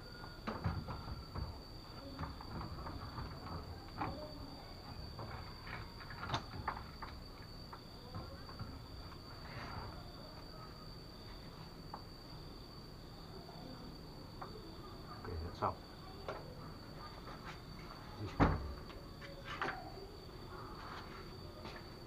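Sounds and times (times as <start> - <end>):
knocks and clicks of wooden door: 0.3 - 4.3, 18.3 - 18.9.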